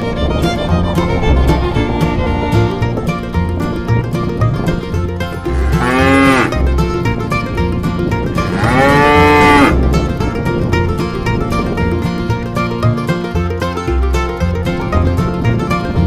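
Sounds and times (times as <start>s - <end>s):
music with plucked strings: 0.0s - 16.0s
cow mooing: 5.5s - 6.6s, 8.4s - 9.8s.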